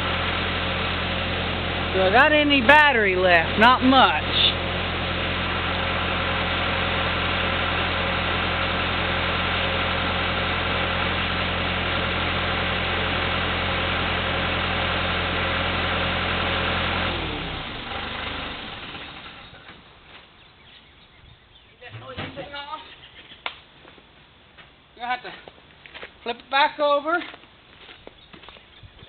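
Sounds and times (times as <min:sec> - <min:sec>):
engine idling and winding down: 0:00.0 - 0:20.0.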